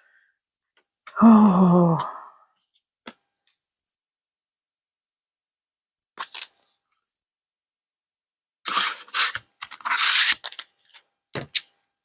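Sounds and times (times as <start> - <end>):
packaging rustling and scraping: 6.2 - 6.8, 8.7 - 11.6.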